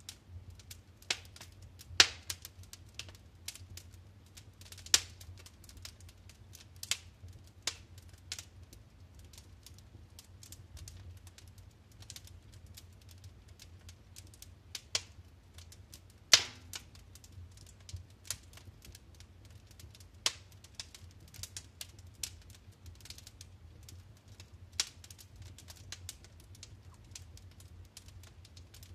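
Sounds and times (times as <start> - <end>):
wood fire crackling and popping: 0.0 - 28.9.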